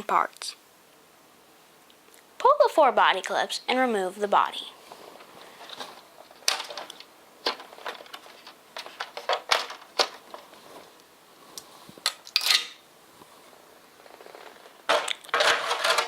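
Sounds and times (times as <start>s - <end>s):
plastic body scraping rustle: 4.8s - 12.1s, 13.2s - 16.0s.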